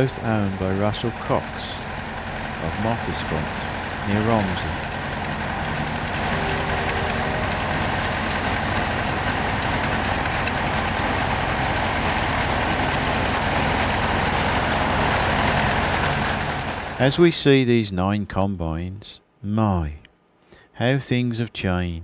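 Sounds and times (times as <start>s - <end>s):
harvester and tractor engines: 0.0s - 17.1s.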